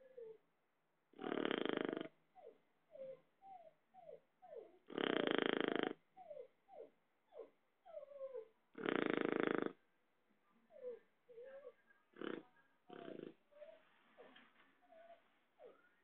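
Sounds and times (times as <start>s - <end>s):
dog snoring: 1.2s - 2.2s, 4.8s - 6.4s, 7.9s - 9.8s, 12.1s - 14.3s.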